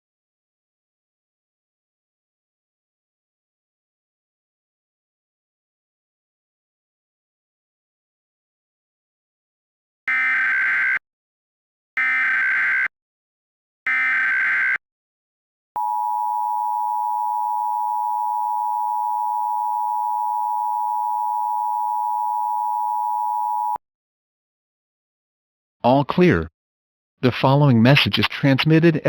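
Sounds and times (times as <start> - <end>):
data tone bursts: 15.8 - 23.8
two-tone attention signal: 15.8 - 23.8.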